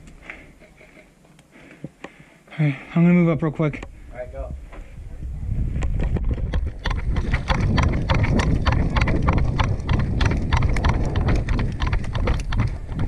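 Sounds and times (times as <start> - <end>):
heavy low rumble: 4.4 - 13.0
quick running footsteps: 5.9 - 13.0
gear knocking and rattling: 6.0 - 13.0.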